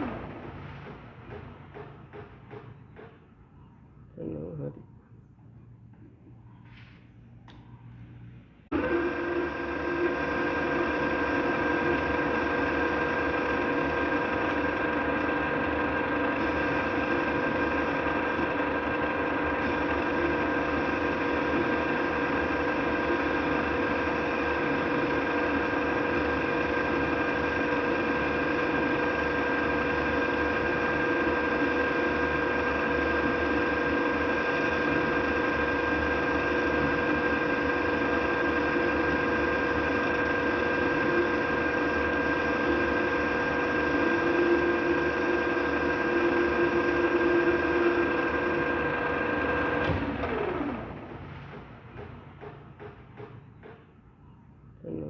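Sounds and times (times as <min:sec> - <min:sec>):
metal lathe humming and whining: 0:08.7 - 0:51.2.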